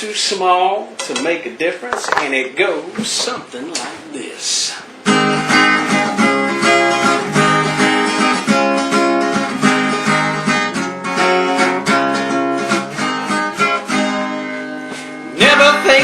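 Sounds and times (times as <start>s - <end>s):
acoustic guitar strumming: 5.0s - 16.0s.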